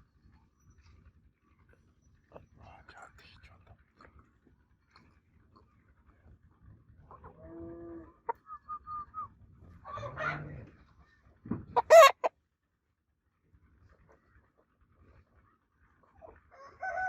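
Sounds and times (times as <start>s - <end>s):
clucks: 8.2s - 8.9s, 9.8s - 12.3s, 13.9s - 17.0s
roosters calling: 9.8s - 10.7s, 11.8s - 12.3s.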